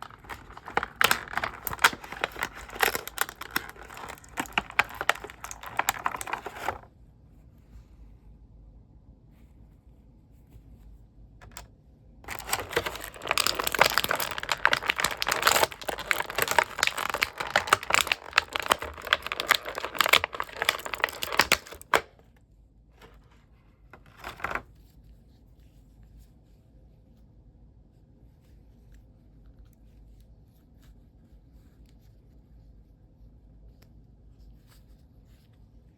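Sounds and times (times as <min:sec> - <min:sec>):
packaging crinkling and tearing: 0:00.0 - 0:06.9, 0:11.4 - 0:11.6, 0:12.3 - 0:22.2, 0:24.0 - 0:24.7.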